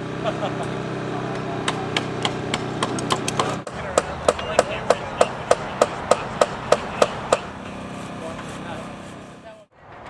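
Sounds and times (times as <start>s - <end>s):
hammer blows ringing: 1.4s - 7.8s.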